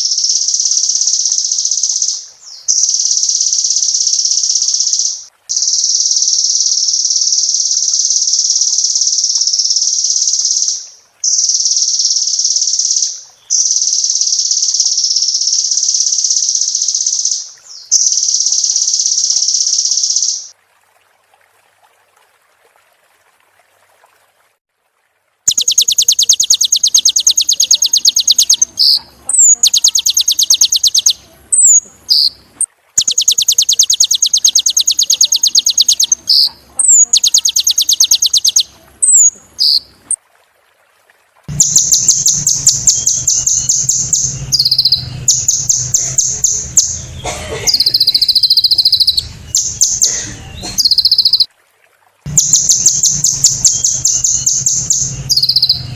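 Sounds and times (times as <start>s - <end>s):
bird singing high trills: 0.0s - 20.5s, 25.5s - 39.9s, 41.5s - 51.5s, 52.3s - 55.9s
bird whistles: 25.5s - 32.4s, 33.0s - 39.9s, 41.6s - 51.5s, 52.3s - 55.9s.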